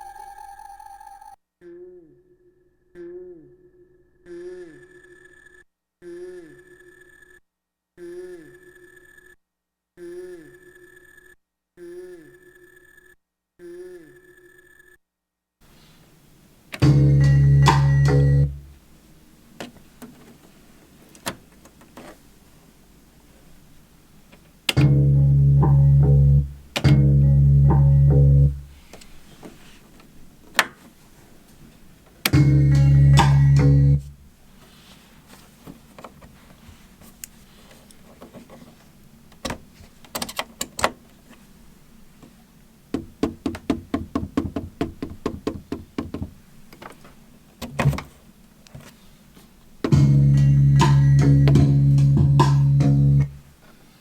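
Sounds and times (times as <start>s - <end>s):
sampled bass note: 16.8s - 18.8s, 24.8s - 28.7s, 32.4s - 34.1s, 49.9s - 53.3s.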